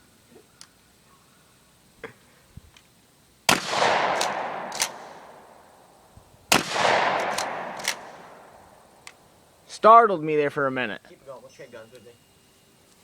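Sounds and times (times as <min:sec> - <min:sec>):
gunshots with echo: 0:03.5 - 0:05.5, 0:06.5 - 0:08.5
sharp cracks: 0:03.5 - 0:09.2.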